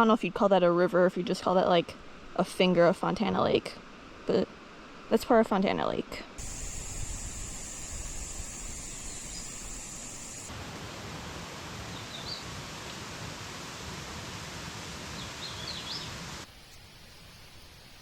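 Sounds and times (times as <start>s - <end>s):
faint bird chirps: 6.4s - 10.5s
rushing noise in woodland: 6.4s - 18.0s.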